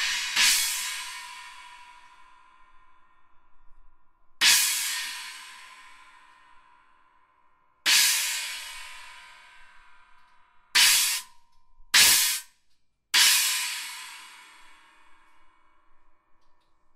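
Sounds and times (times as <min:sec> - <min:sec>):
cymbal crashes: 0:00.0 - 0:02.1, 0:10.8 - 0:11.3, 0:12.0 - 0:12.4.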